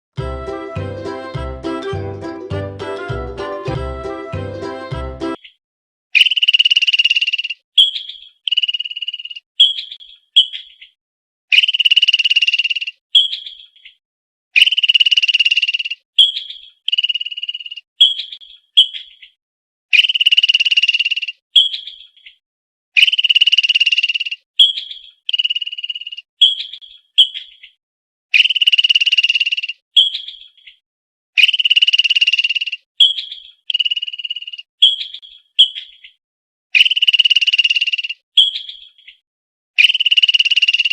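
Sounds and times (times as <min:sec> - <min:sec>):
squirrel buzzing and chirping: 0:06.2 - 0:10.7, 0:14.6 - 0:19.1, 0:23.0 - 0:27.5, 0:31.4 - 0:35.9, 0:36.8 - 0:38.9, 0:39.8 - 0:40.9.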